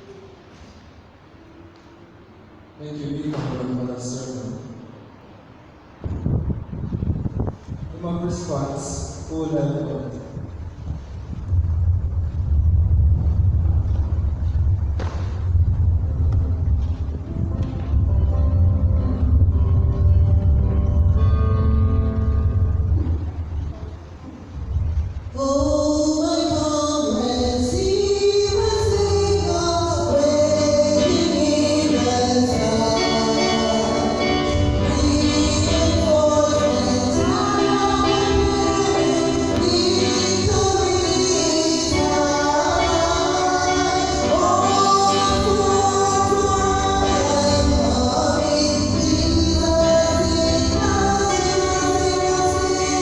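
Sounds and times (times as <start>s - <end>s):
choir singing a hymn: 26.1s - 53.0s
instrumental accompaniment: 28.7s - 53.0s.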